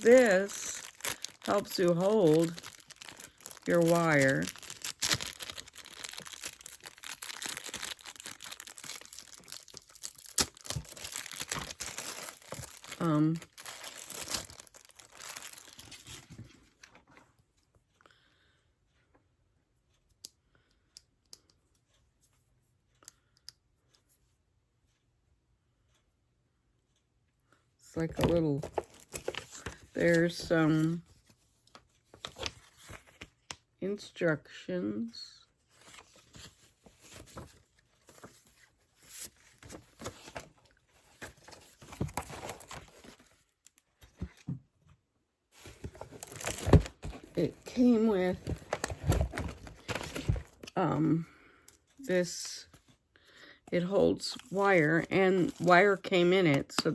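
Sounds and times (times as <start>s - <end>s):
paper and packaging crinkling: 0.0s - 17.0s, 28.0s - 33.4s, 35.7s - 44.4s, 45.6s - 50.8s, 53.8s - 56.8s.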